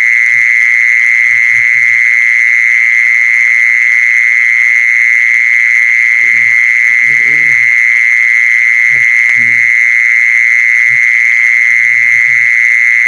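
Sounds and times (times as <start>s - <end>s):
high-pitched animal trill: 6.2s - 7.9s, 8.9s - 9.7s.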